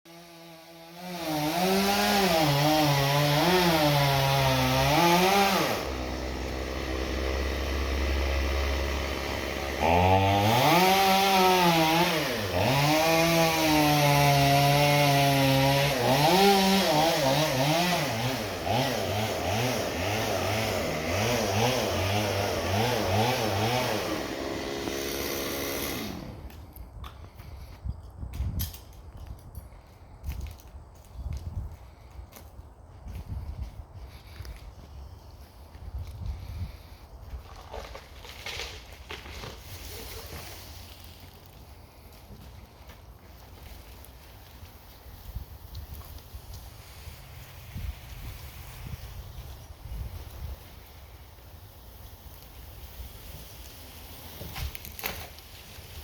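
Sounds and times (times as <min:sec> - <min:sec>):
chainsaw revving: 0:00.1 - 0:26.7.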